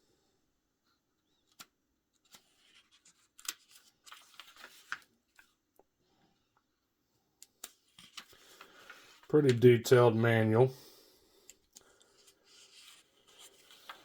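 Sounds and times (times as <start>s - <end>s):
paper pages flipping: 1.4s - 5.6s, 7.5s - 9.6s, 11.6s - 14.0s.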